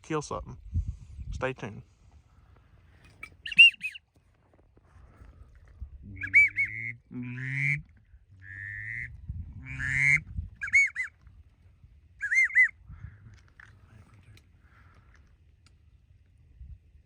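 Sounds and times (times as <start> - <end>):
waterfowl honking: 3.2 - 4.0, 6.2 - 11.2, 12.2 - 12.8.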